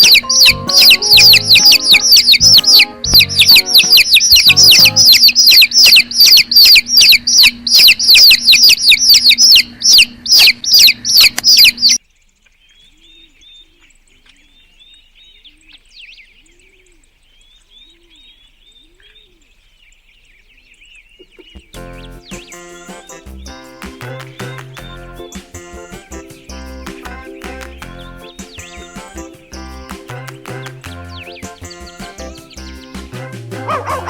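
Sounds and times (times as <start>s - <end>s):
music: 0.0s - 5.2s, 21.6s - 34.0s
bird chirping fast: 0.0s - 12.0s, 20.6s - 34.0s.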